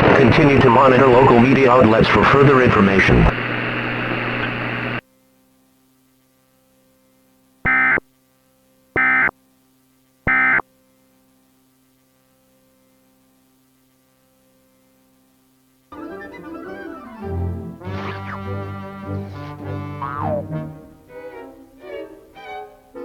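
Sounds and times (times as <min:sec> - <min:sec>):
faint steady hum: 0:00.0 - 0:23.0
warbling digital tone bursts: 0:19.6 - 0:20.6.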